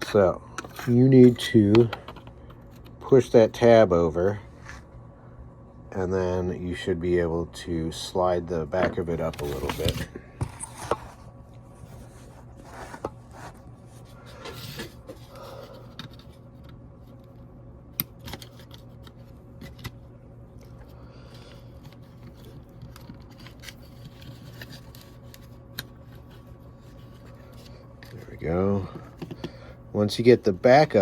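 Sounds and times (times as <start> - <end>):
steady low hum: 0.0 - 31.0
plastic parts clicking and scraping: 20.6 - 29.6.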